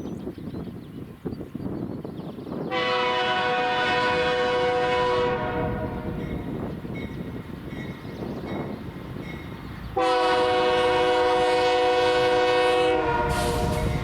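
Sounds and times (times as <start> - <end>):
low rumble of train: 0.0 - 14.0
locomotive air horn chord: 2.7 - 6.2, 10.0 - 14.0.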